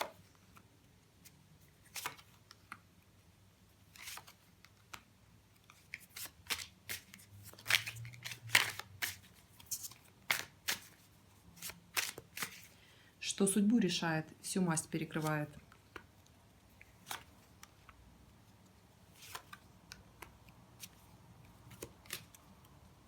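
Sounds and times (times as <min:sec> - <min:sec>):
cards shuffled and flipped: 0:01.8 - 0:02.8, 0:03.9 - 0:12.8, 0:16.8 - 0:18.0, 0:19.1 - 0:22.7.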